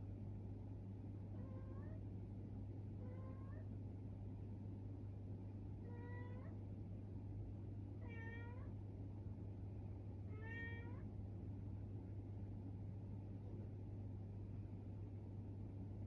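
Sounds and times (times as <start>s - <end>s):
steady low hum: 0.0s - 16.0s
cat meowing: 8.0s - 8.7s, 10.3s - 11.0s.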